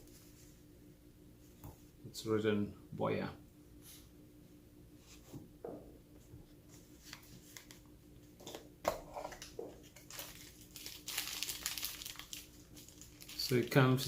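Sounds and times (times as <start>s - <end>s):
plastic crinkling: 9.9s - 14.0s.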